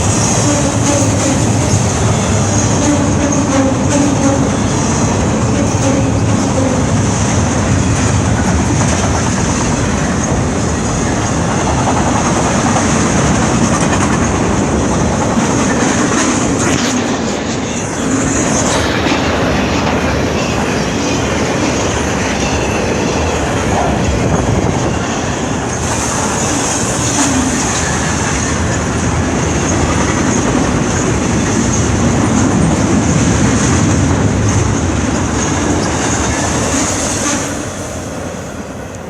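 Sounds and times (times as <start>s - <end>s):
train wheels rumbling on rails: 0.0s - 39.0s.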